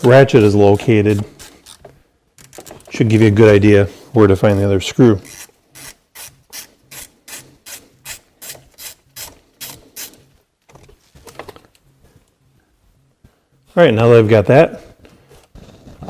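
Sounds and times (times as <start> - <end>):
hand ratchet rasping: 0.0 - 3.3, 4.4 - 10.3.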